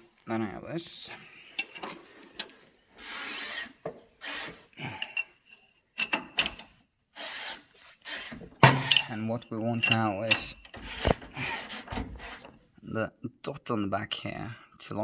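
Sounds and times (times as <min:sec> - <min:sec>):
hand tool scraping strokes: 0:01.8 - 0:05.1, 0:07.2 - 0:09.1, 0:10.8 - 0:12.5.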